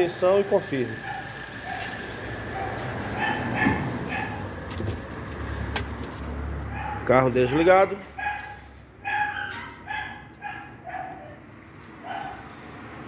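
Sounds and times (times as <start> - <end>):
dog barking: 0.9 - 4.4, 6.7 - 11.4, 12.0 - 12.4.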